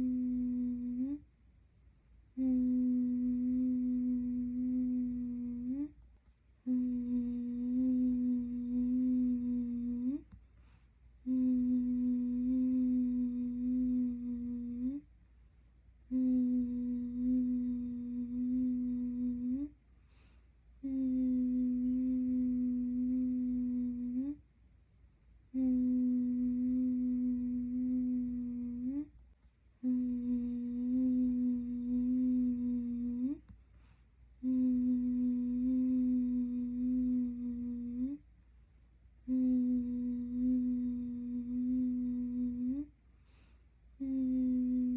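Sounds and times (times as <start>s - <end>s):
person humming low note: 0.0s - 1.3s, 2.3s - 6.0s, 6.6s - 10.4s, 11.2s - 15.1s, 16.0s - 19.8s, 20.8s - 24.4s, 25.5s - 29.1s, 29.8s - 33.5s, 34.4s - 38.2s, 39.2s - 42.9s, 44.0s - 44.9s.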